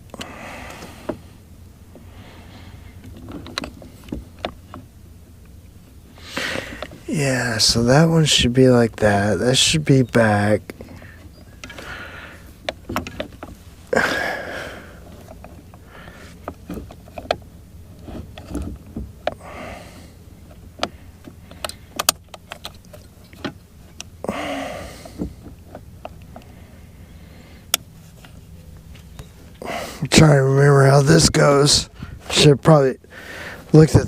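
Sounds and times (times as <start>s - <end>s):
scraping or rustling: 15.0s - 19.2s.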